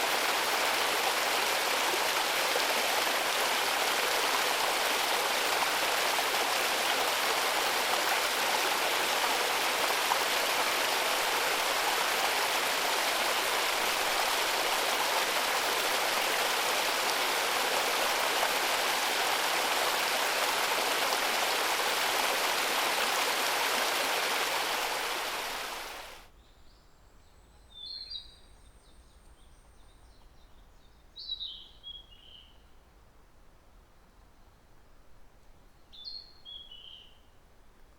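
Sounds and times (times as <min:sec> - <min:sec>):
water rushing over rocks: 0:00.0 - 0:26.2
songbird chirping: 0:25.8 - 0:32.7, 0:35.7 - 0:37.4.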